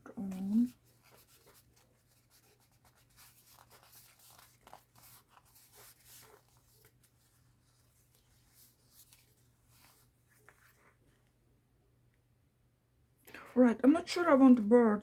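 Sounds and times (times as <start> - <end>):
paper rustling and tapping: 0.3 - 11.0.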